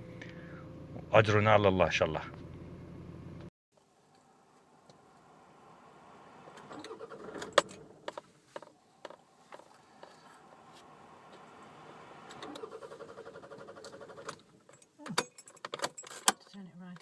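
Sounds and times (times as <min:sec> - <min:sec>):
starter motor rattling buzz: 0:11.4 - 0:14.4.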